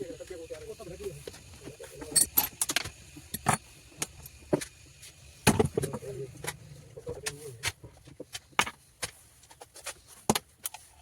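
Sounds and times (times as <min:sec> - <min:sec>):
small metal parts clinking: 0:02.1 - 0:04.4.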